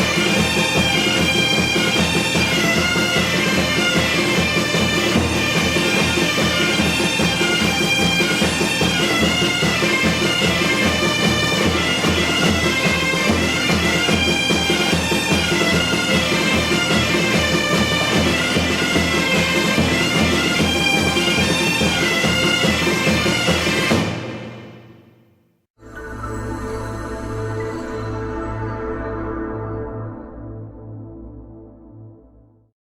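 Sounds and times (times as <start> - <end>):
bagpipe melody with drone: 0.0 - 23.9.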